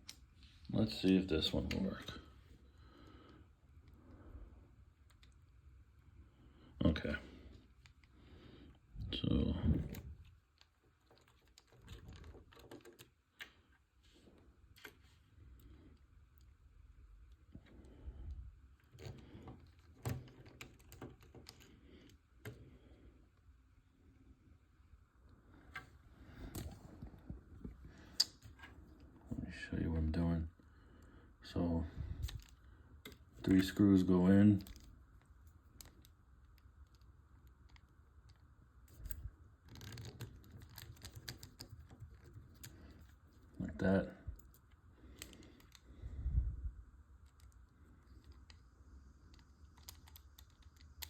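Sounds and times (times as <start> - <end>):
plastic parts clicking and scraping: 9.8 - 13.8, 18.8 - 22.6, 34.6 - 43.6, 44.4 - 45.9, 47.2 - 51.0.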